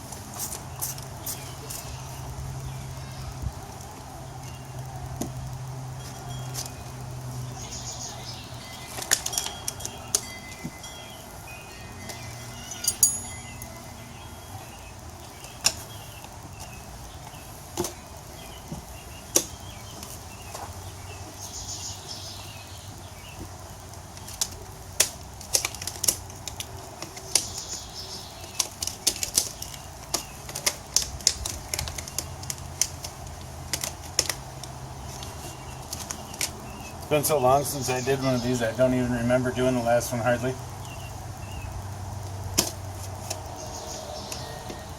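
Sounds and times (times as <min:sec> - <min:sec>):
tire scraping: 0:00.0 - 0:44.9
metal tools clicking on wheel rim: 0:12.0 - 0:13.8.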